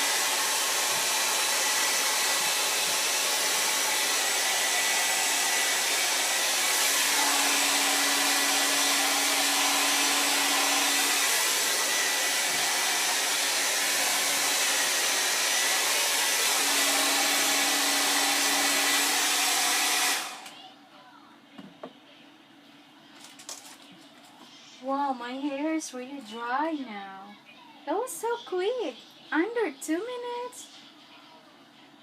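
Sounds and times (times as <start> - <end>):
hair dryer blowing: 0.0 - 20.6.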